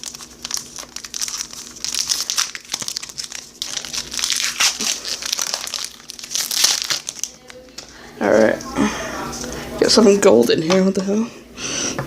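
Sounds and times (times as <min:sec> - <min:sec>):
plastic wrapper tearing and crinkling: 0:00.0 - 0:07.8.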